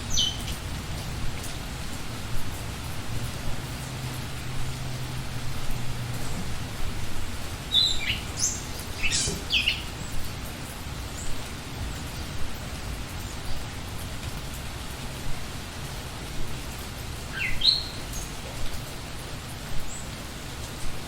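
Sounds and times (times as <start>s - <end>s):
bird chirping: 0.0s - 0.6s, 7.7s - 10.2s, 17.3s - 18.4s
scattered drips: 0.0s - 21.0s
steady rain falling: 0.0s - 21.0s.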